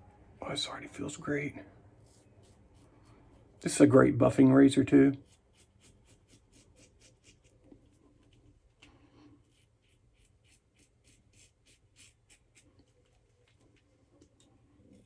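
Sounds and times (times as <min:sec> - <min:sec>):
razor scraping over lathered face: 0:05.2 - 0:07.6, 0:09.4 - 0:13.1.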